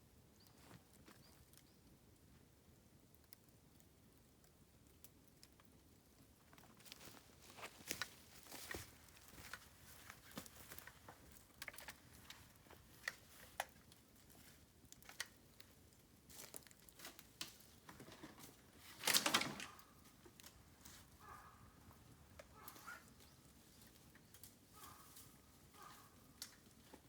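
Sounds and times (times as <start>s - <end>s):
dry bamboo crackling: 0.4s - 27.0s
bamboo rustling: 6.5s - 27.0s.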